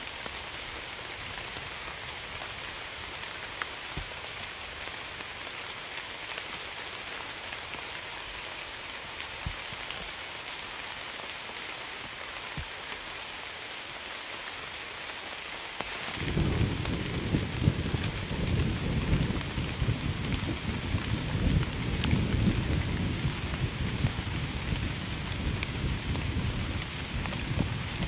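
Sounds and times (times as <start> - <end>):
steady rain hiss: 0.0 - 28.0
low rumble of thunder: 16.1 - 28.0.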